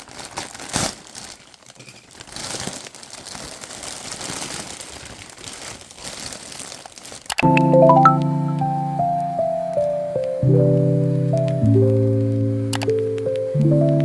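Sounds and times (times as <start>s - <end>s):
packaging crinkling and rustling: 0.0s - 7.4s.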